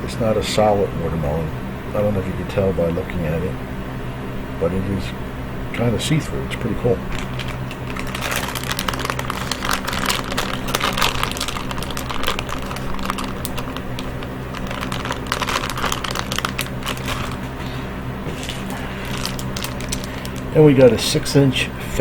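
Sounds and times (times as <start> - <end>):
steady low hum: 0.0 - 22.0
plastic packaging crinkling: 7.1 - 21.2.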